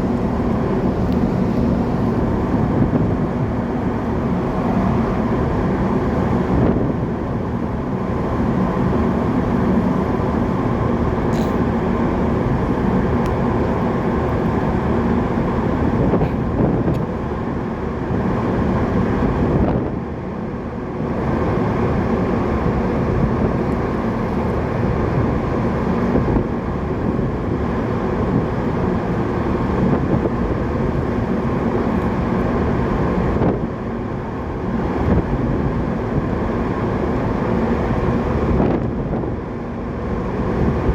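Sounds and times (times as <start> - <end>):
rushing water noise: 0.0 - 6.5
ship engine hum: 0.0 - 40.9.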